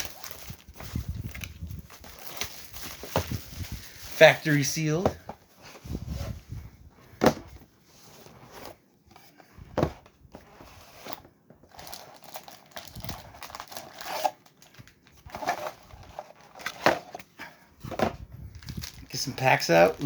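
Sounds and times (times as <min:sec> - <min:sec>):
plastic shrink wrap tearing: 0:00.0 - 0:04.6, 0:11.7 - 0:15.0.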